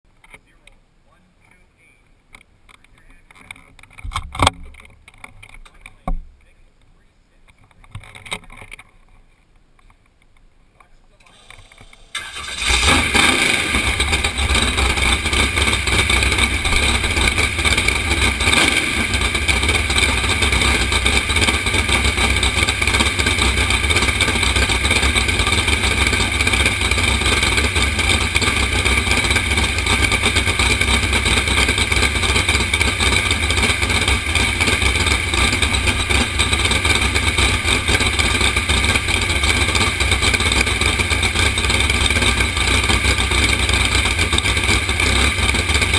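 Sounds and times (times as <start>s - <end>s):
boat engine roaring: 11.3s - 45.9s.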